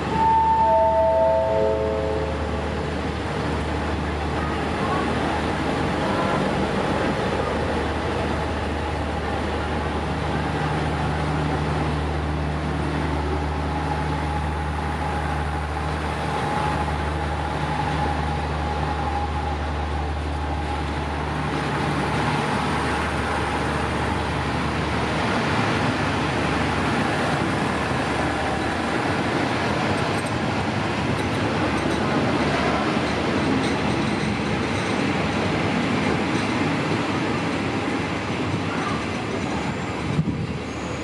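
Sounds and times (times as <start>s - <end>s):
diesel locomotive humming: 0.0s - 41.0s
train rumbling as it rolls: 0.0s - 41.0s.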